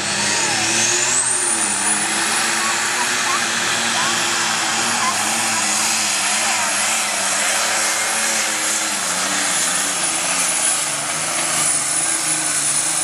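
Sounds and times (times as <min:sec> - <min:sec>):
diesel engine under load: 0:00.0 - 0:13.0
high turbo whine: 0:00.0 - 0:13.0.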